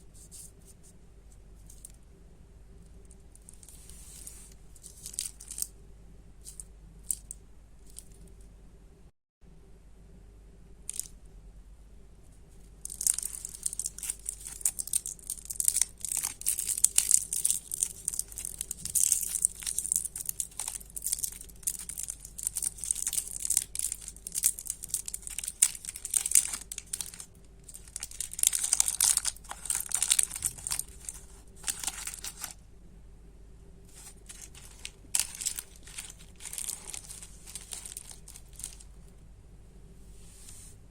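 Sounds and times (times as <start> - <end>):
candy wrappers crinkling: 3.4 - 5.7, 12.8 - 32.6, 33.9 - 39.1.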